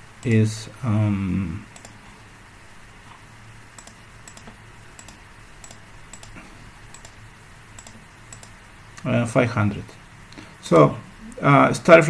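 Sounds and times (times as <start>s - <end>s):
faint low hum: 0.0s - 12.0s
computer keys clicking: 1.7s - 2.0s, 3.7s - 7.2s, 7.8s - 8.6s.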